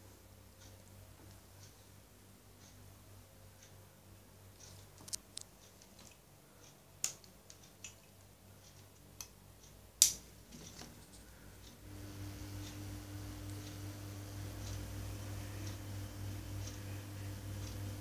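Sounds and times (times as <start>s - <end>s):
faint low hum: 0.0s - 18.0s.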